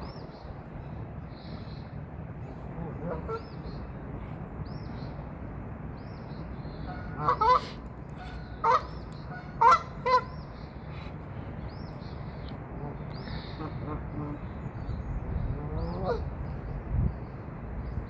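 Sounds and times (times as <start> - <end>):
geese honking: 6.9 - 10.4.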